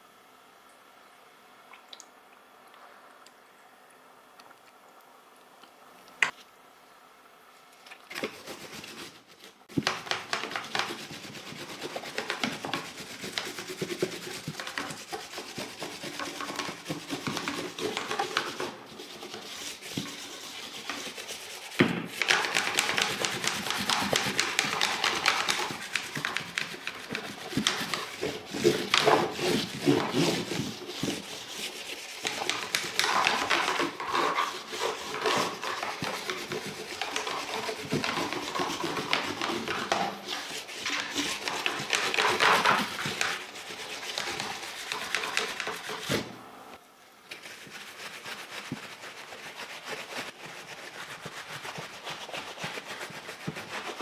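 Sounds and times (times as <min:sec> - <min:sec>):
plastic keyboard parts scrubbed: 0:08.1 - 0:46.4.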